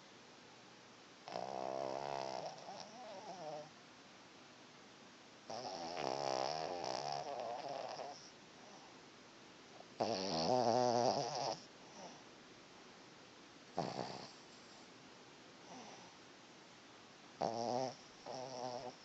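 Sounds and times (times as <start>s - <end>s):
person snoring: 5.5s - 8.3s, 10.0s - 12.2s, 17.4s - 19.0s
quiet breathing: 5.9s - 10.0s, 11.1s - 15.0s, 15.6s - 16.4s.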